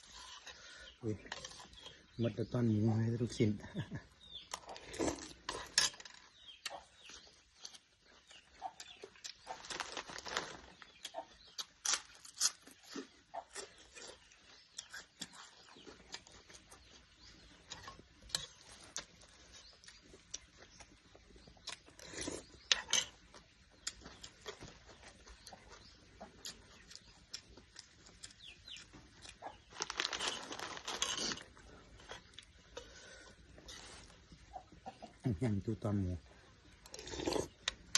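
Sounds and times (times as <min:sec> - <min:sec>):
chickens clucking: 0:06.3 - 0:11.6, 0:12.8 - 0:30.8, 0:31.5 - 0:36.9.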